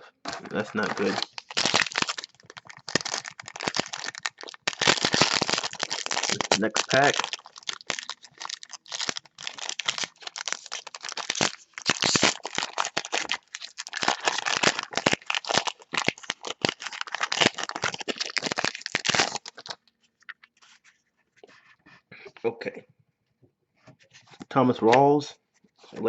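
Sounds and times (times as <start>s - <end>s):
foil wrapper crinkling: 0.3s - 20.8s.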